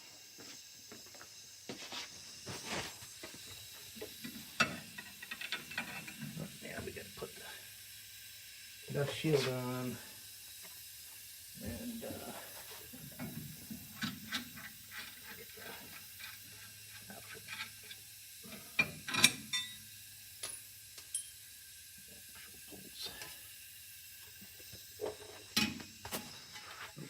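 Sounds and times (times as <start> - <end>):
steel parts clinking: 18.7 - 19.8.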